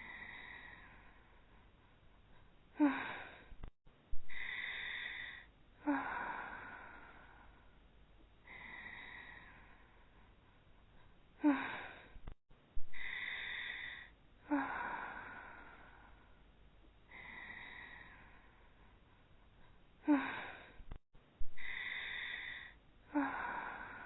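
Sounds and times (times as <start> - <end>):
breathy exhales: 21.5 - 24.0.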